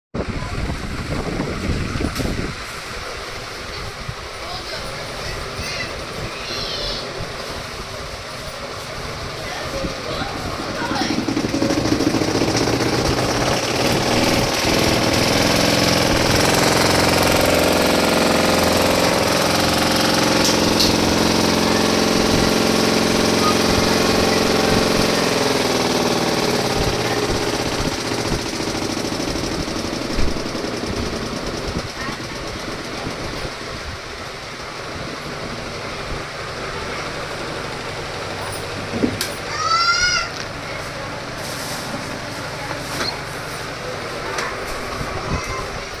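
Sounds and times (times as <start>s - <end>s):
washing machine drum rattling: 8.2s - 39.8s
motor whine: 8.8s - 46.0s.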